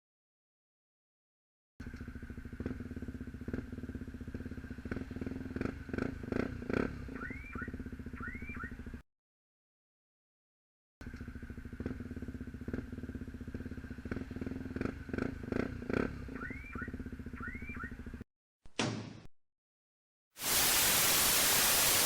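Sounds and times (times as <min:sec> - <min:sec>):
motorcycle engine idling: 0:01.8 - 0:09.0, 0:11.0 - 0:18.2.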